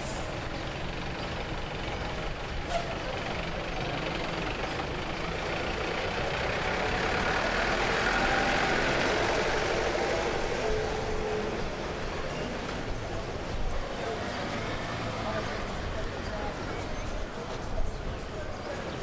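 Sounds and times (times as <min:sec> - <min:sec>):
city street traffic: 0:00.0 - 0:19.0
heavy vehicle passing: 0:03.2 - 0:17.8.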